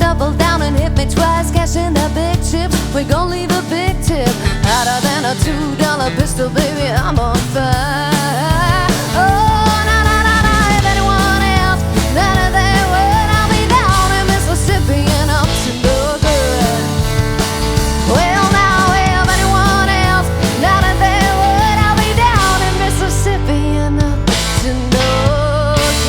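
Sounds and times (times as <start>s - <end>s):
bass and drums: 0.0s - 26.0s
lead guitar line bending: 0.0s - 26.0s.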